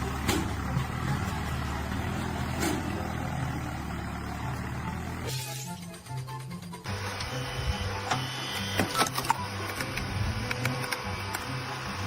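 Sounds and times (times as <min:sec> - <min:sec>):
engine running steadily: 0:00.0 - 0:12.0
short clicks: 0:09.0 - 0:11.4.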